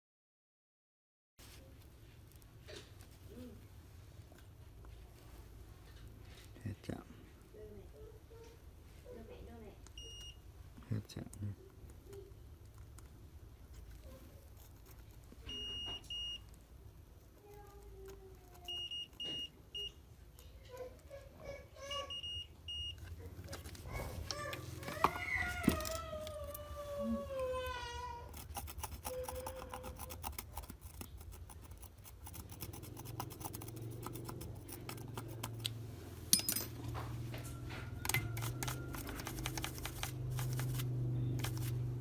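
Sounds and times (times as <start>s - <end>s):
multimeter beeps: 10.0s - 10.4s, 15.4s - 16.4s, 18.7s - 20.0s, 22.1s - 23.0s
tools clicking and knocking: 33.6s - 40.5s.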